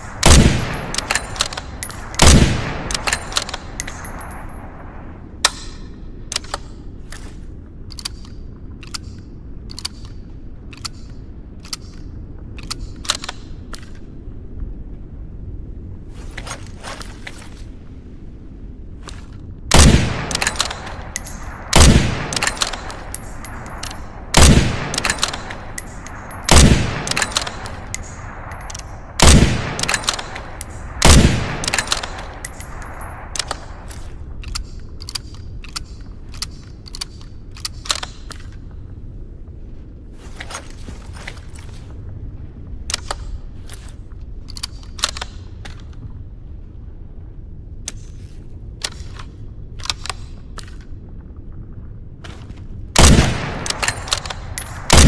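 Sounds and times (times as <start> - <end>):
rifle shots echoing: 0.0 - 4.5, 19.7 - 33.9, 53.0 - 55.0
metallic bolt clicks: 0.8 - 4.4, 7.9 - 14.0, 20.2 - 38.6, 53.0 - 55.0.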